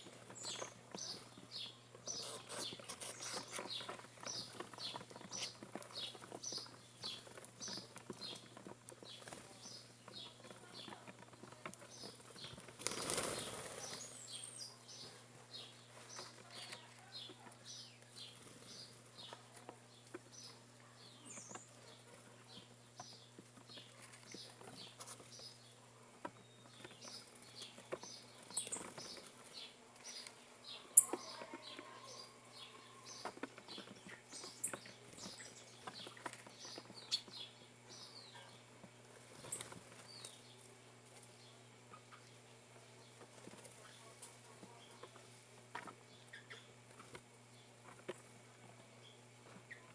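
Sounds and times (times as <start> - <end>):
small birds chirping: 0.0 - 49.9
wings flapping: 11.7 - 14.2.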